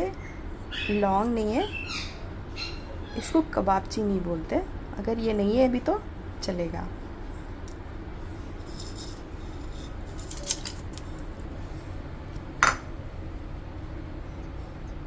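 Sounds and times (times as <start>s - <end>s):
low steady hum: 0.0s - 15.0s
metal utensils clinking and scraping: 8.6s - 11.0s.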